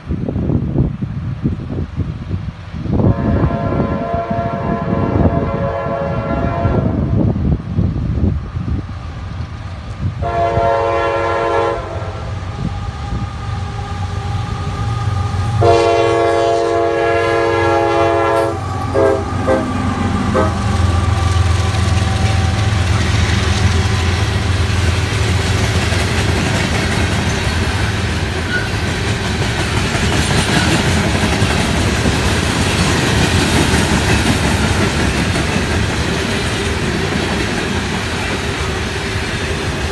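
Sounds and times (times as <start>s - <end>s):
locomotive engine rumbling: 0.4s - 39.9s
train horn blasts: 3.0s - 7.4s, 10.2s - 24.7s
train wheels clattering: 8.6s - 39.9s.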